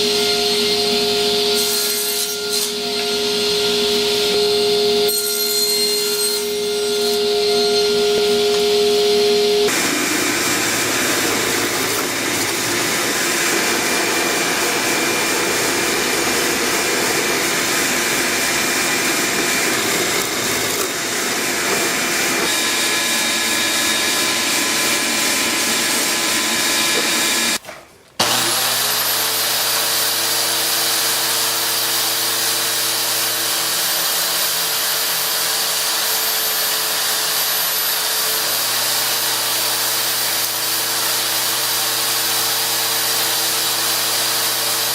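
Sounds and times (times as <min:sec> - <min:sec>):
power tool motor whining: 0:00.0 - 0:27.6, 0:28.2 - 0:44.9.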